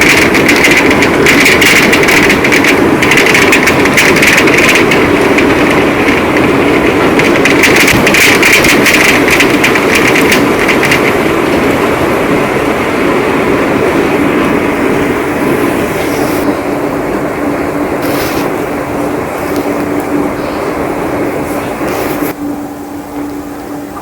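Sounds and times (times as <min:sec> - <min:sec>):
heavy rain pouring: 0:00.0 - 0:22.4
close raindrops crackling: 0:07.2 - 0:11.2.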